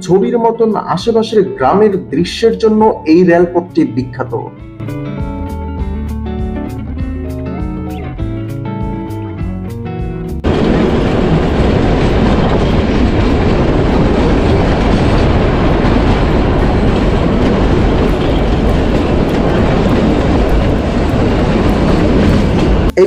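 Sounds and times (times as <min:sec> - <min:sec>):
train wheels rumbling on rails: 0:10.4 - 0:23.0.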